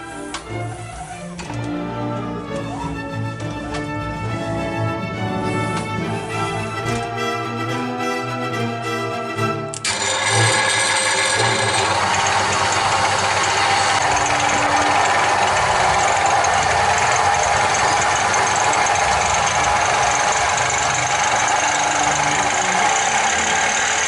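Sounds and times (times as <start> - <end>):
drill motor whirring: 9.7 - 24.0.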